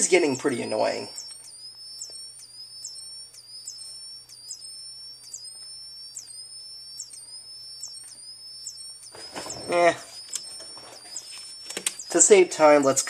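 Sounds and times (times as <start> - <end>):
fire alarm sweep tone: 0.0 - 13.0.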